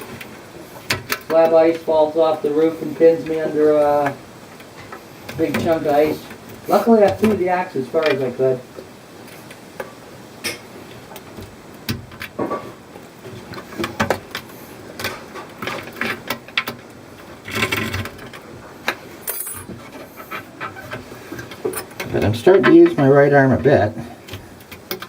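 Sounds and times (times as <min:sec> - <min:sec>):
scraping or rustling: 0:00.0 - 0:08.6, 0:12.2 - 0:25.0
small clicks and taps: 0:24.3 - 0:25.0.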